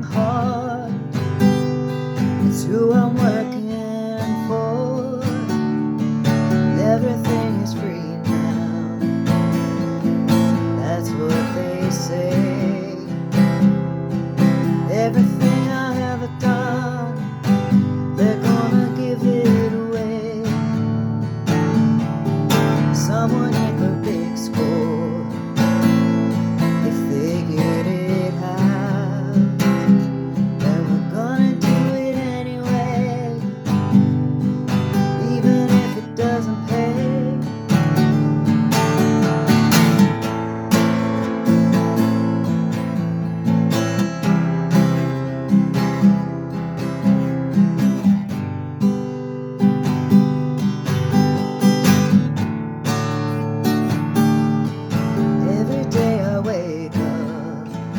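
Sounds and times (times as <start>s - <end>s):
acoustic guitar strumming: 0.0s - 57.9s.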